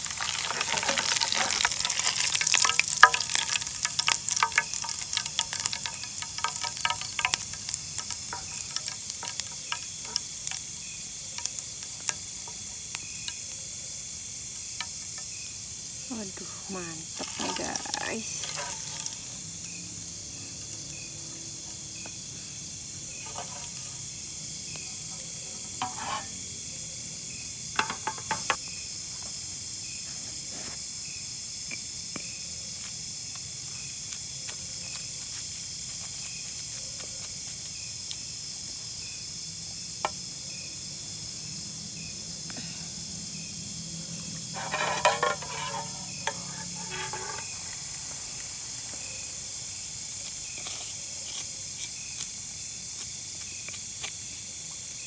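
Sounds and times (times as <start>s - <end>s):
cooking utensils clattering: 0.0s - 10.4s, 17.2s - 19.3s, 23.2s - 23.9s, 25.8s - 26.4s, 44.4s - 47.5s
insects chorus: 0.0s - 55.0s.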